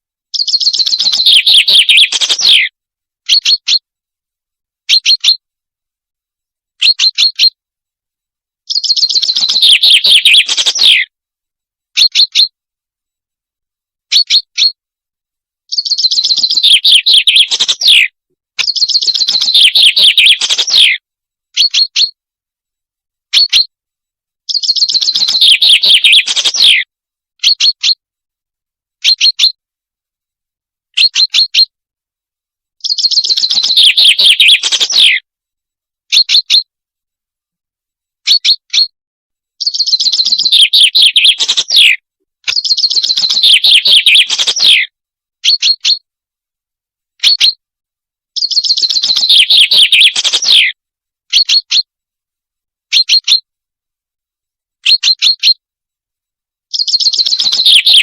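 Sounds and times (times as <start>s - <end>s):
recorded bird song chirps and trills: 0.0s - 3.9s, 4.8s - 5.5s, 6.7s - 7.6s, 8.6s - 11.1s, 11.9s - 12.6s, 14.0s - 14.8s, 15.6s - 22.2s, 23.3s - 23.7s, 24.4s - 28.0s, 29.0s - 29.6s, 30.9s - 31.8s, 32.8s - 35.3s, 36.1s - 36.7s, 38.2s - 39.0s, 39.6s - 46.1s, 47.2s - 47.6s, 48.3s - 51.9s, 52.9s - 53.5s, 54.8s - 55.6s, 56.7s - 58.0s.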